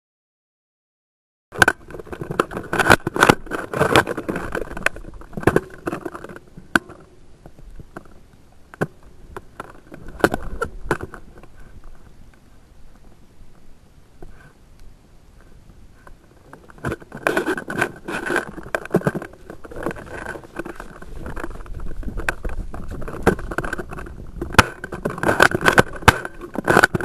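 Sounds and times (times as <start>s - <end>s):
rustling and scraping handling noise: 1.6s - 14.7s, 15.3s - 27.0s
sharp clicks and knocks: 16.0s - 27.0s.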